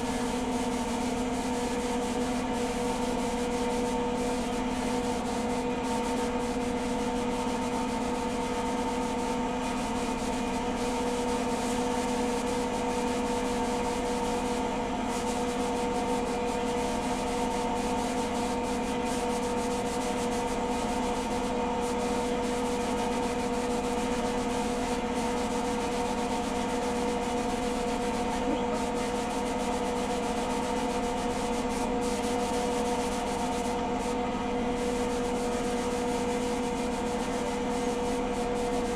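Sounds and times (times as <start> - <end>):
motor-driven machine humming: 28.4 - 28.9.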